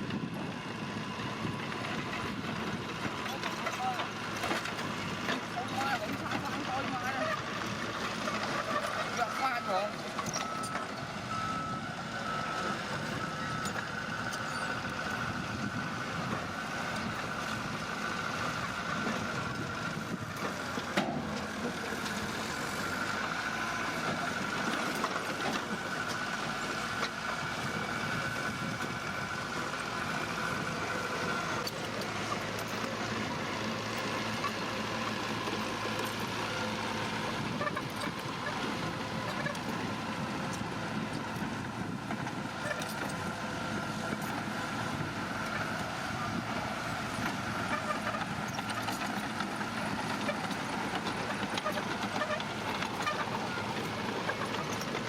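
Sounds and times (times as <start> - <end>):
heavy machinery running: 0.0 - 55.0
reversing alarm beeping: 9.2 - 13.8.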